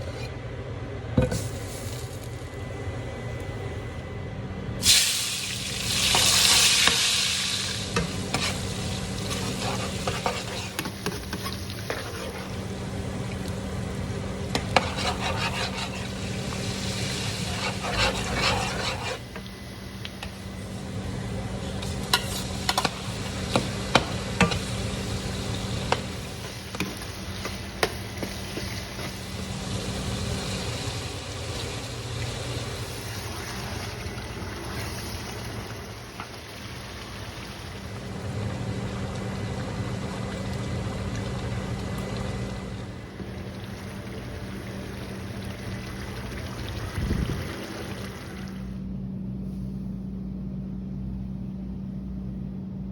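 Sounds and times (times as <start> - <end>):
low steady hum: 0.0 - 52.9
food sizzling in a pan: 4.8 - 20.0.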